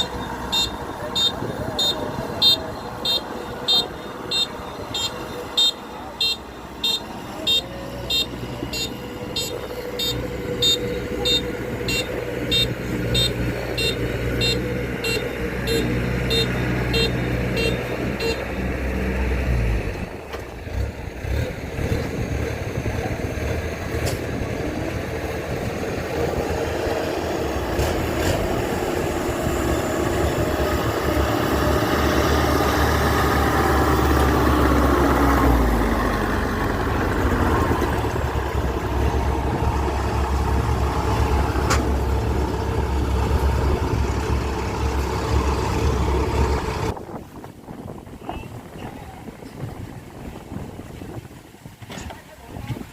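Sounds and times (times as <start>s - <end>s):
high warning beeps: 0.0s - 18.4s
diesel engine running: 0.0s - 51.2s.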